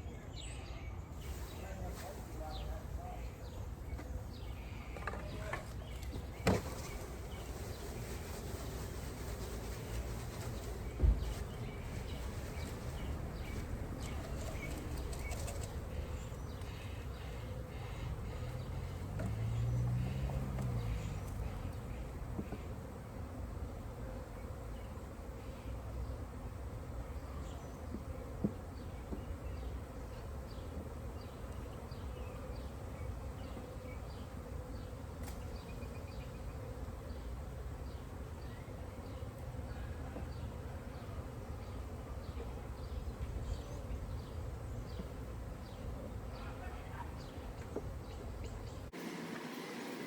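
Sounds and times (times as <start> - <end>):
honeybees buzzing: 1.2 - 50.0.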